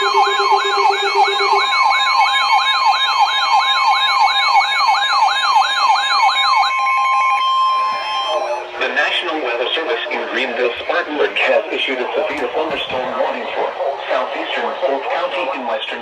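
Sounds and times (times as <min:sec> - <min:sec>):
steady high alert tones: 0:00.0 - 0:03.8.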